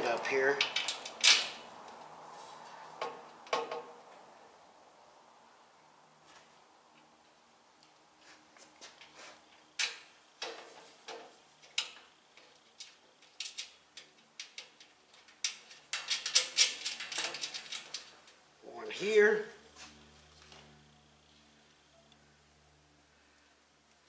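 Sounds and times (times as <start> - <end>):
metal bolts and nuts clinking: 0.5 - 1.7, 9.8 - 18.4.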